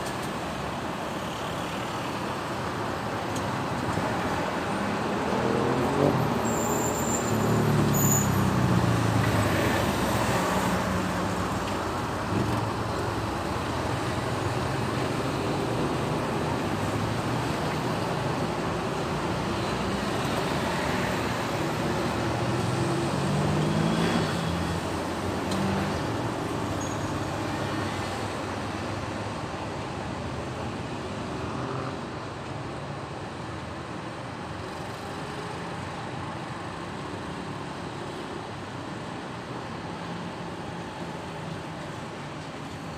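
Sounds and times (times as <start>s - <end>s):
street traffic noise: 0.0s - 42.9s
vehicle engines pulling away: 19.4s - 24.9s.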